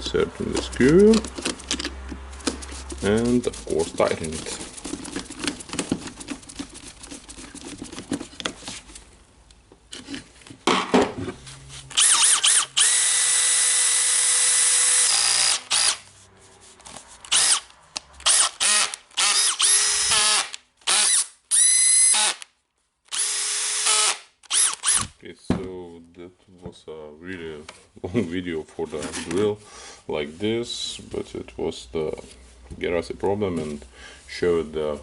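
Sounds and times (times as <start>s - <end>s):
cordless drill whining: 11.9s - 16.0s, 17.3s - 22.4s, 23.1s - 25.1s.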